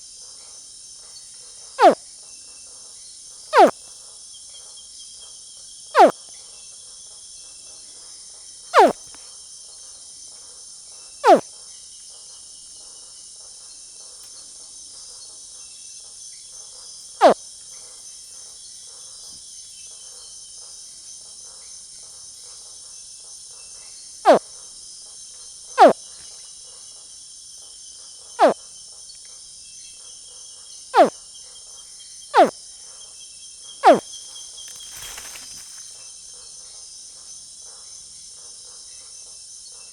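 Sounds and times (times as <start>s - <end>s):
young caiman screaming: 8.8s - 9.0s, 11.2s - 11.4s
night insects droning: 14.7s - 39.8s.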